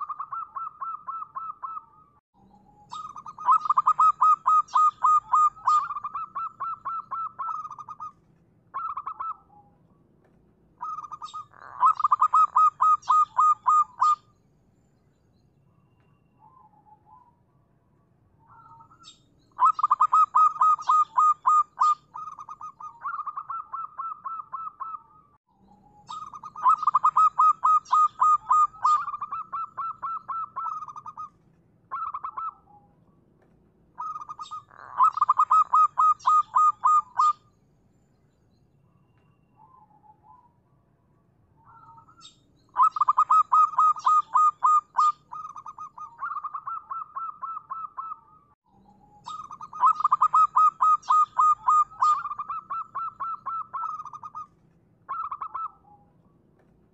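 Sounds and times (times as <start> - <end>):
dove cooing: 0.0 - 2.0, 2.7 - 9.7, 10.8 - 14.2, 18.5 - 25.2, 26.0 - 32.8, 34.0 - 37.4, 41.7 - 48.4, 49.0 - 56.0.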